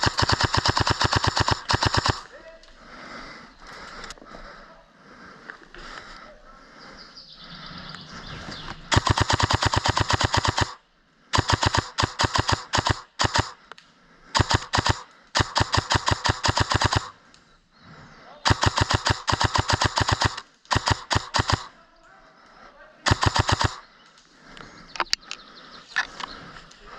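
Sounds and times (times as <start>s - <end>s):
airsoft rifle bursts: 0.0s - 2.4s, 8.9s - 13.6s, 14.3s - 17.2s, 18.4s - 21.8s, 23.0s - 23.8s.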